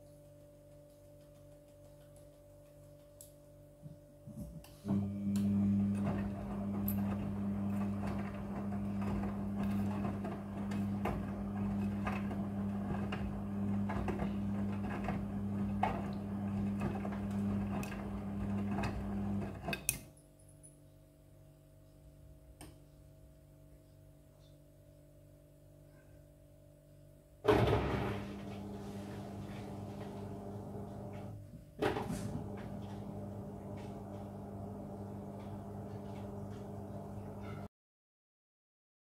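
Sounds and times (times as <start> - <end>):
washing machine motor hum: 4.4 - 19.7, 27.4 - 37.7.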